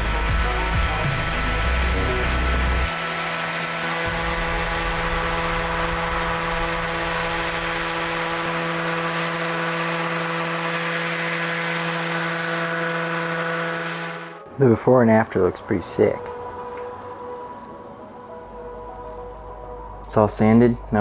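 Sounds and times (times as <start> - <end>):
power sander on plywood: 0.0 - 14.5.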